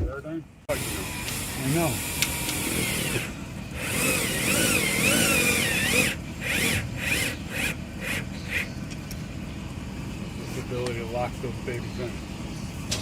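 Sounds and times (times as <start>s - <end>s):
cordless drill whining: 0.7s - 8.6s.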